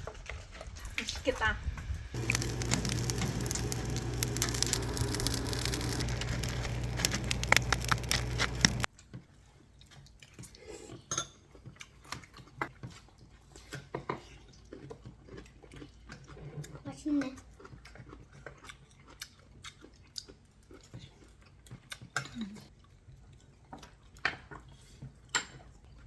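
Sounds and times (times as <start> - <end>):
low hum: 2.2 - 8.9
steady hiss: 2.2 - 8.9.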